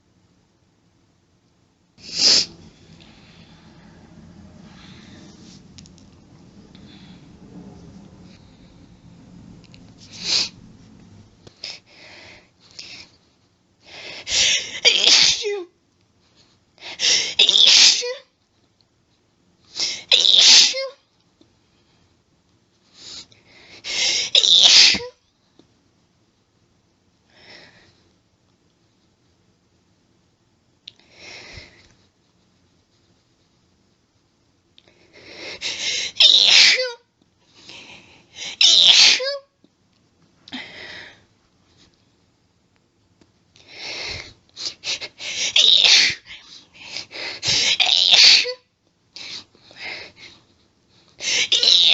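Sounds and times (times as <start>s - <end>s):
woman sneezing: 14.3s - 15.6s, 17.1s - 18.3s, 19.8s - 21.0s, 24.2s - 25.2s, 36.0s - 37.0s, 38.5s - 39.5s, 45.3s - 46.3s, 47.5s - 48.6s.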